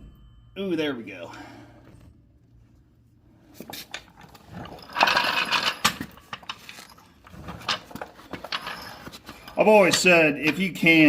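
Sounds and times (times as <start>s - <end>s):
metal scraping and rattling: 3.2s - 11.0s
metal tools clicking and knocking: 3.7s - 10.7s.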